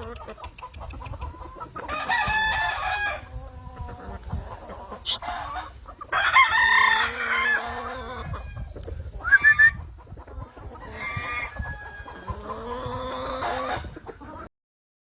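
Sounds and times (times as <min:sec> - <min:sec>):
roosters clucking: 0:00.0 - 0:14.5
rooster crowing: 0:01.9 - 0:03.2, 0:06.1 - 0:07.7.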